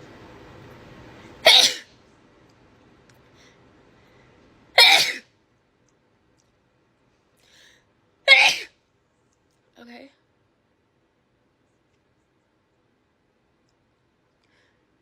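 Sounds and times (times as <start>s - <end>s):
woman sneezing: 1.4s - 1.9s, 4.8s - 5.2s, 8.3s - 8.7s.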